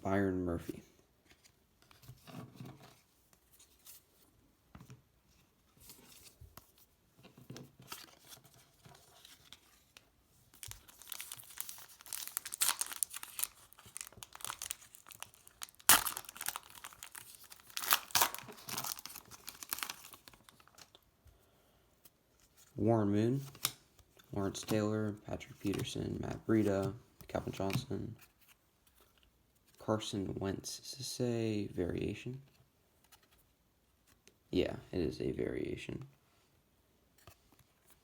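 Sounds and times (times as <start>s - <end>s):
foil wrapper ripping and crinkling: 10.6s - 21.0s.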